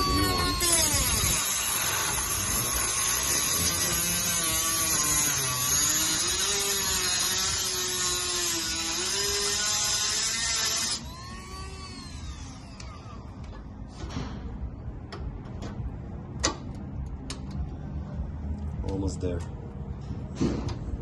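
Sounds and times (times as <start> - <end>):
rotary tool cutting metal: 0.0 - 13.2.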